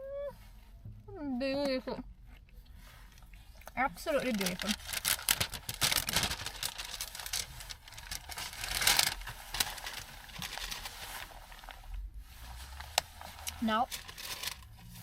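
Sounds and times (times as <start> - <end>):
packaging rustling and crinkling: 4.0 - 15.0.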